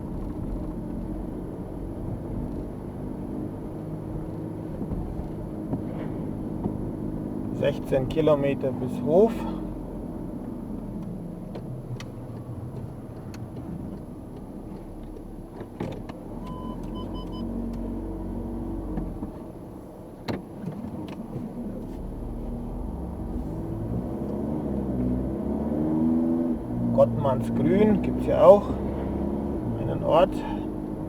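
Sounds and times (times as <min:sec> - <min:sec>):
car engine and tyre rumble: 0:00.0 - 0:31.0
short electronic beeps: 0:16.5 - 0:17.4.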